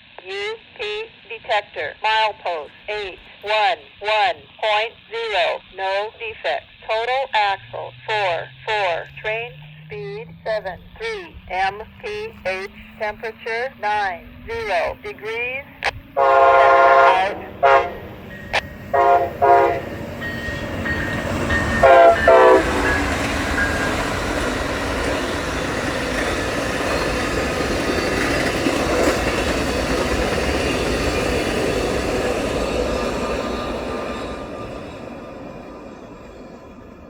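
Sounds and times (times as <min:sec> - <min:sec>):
train passing at speed: 0:07.0 - 0:37.0
locomotive horn blasts: 0:16.2 - 0:24.4.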